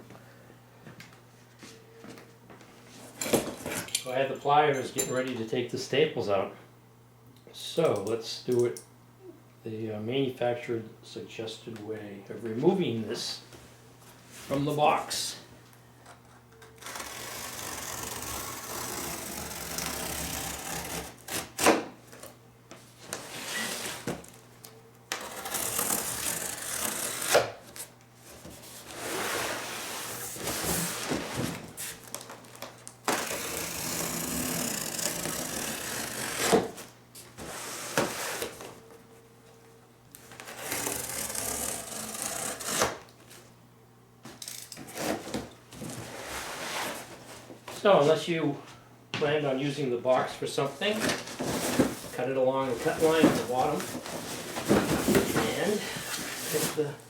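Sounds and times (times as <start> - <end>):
blade cutting cardboard: 16.8 - 21.8, 25.1 - 27.6, 33.1 - 36.8, 40.4 - 43.0.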